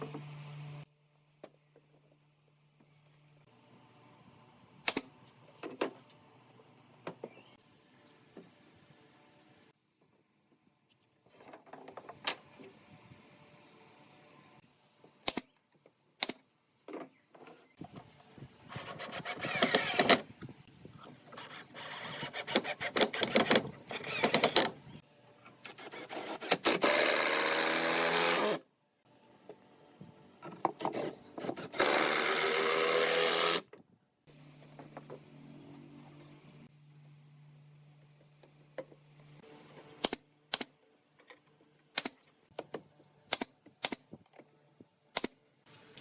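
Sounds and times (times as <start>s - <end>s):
power tool cutting wood: 18.7s - 20.3s, 25.7s - 28.6s, 31.4s - 33.7s.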